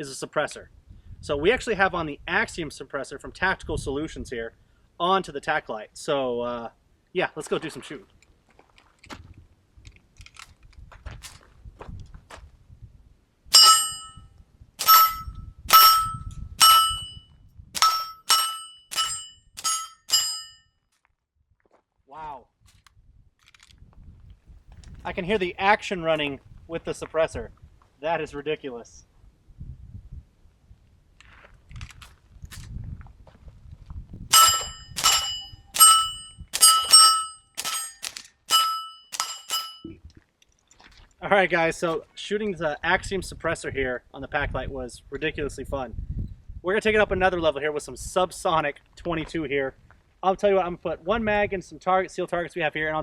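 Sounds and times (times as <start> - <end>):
bullet ringing steel target: 13.5 - 14.2, 14.8 - 17.2, 17.8 - 20.6, 34.3 - 39.9
suppressed pistol shots: 34.3 - 38.2.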